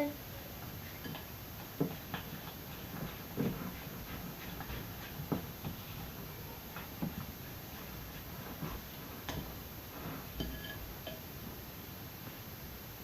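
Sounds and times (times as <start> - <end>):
slime being stirred: 1.1 - 11.2.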